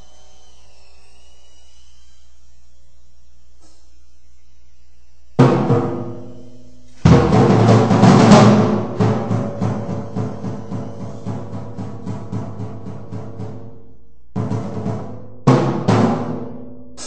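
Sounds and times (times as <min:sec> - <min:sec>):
acoustic drum kit hits: 0:05.4 - 0:06.4, 0:07.0 - 0:13.8, 0:14.4 - 0:16.6.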